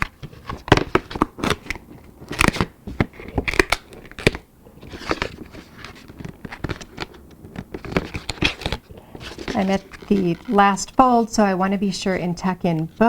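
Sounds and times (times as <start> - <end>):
board crinkling and creasing: 0.0 - 11.4
soft rustle: 4.7 - 13.0.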